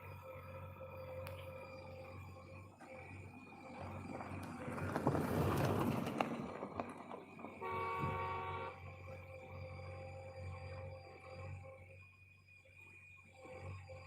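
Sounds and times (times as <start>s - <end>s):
vehicle horn blast: 7.6s - 9.0s.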